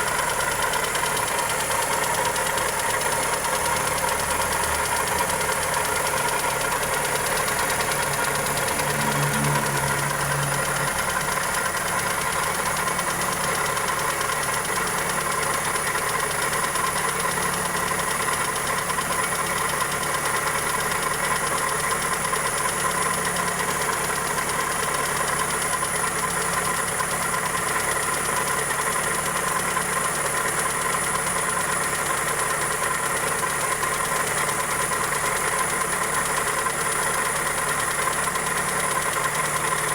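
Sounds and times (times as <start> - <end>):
engine idling with ticking knock: 0.0 - 39.9.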